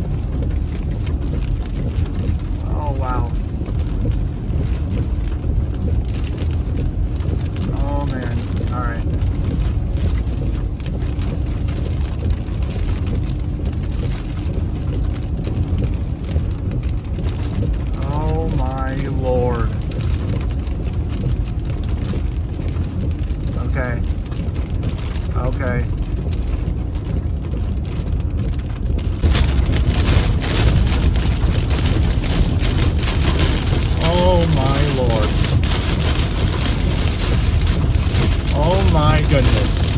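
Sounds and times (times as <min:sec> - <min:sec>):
heavy rain on car roof: 0:00.0 - 0:39.9
steady low rumble: 0:00.0 - 0:39.9
strong wind: 0:29.1 - 0:39.9.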